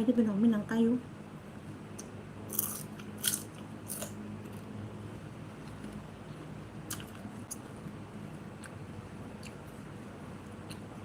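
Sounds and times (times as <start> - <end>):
low steady hum: 0.0 - 11.0
eating crunches: 2.5 - 4.7, 6.9 - 7.7.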